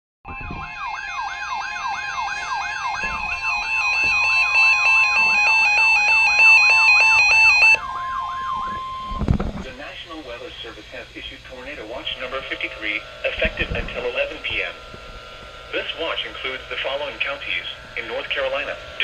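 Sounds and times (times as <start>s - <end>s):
steady alert tone: 0.3s - 9.3s
siren-like sweep: 0.3s - 19.0s
fast high beeps: 2.2s - 9.2s.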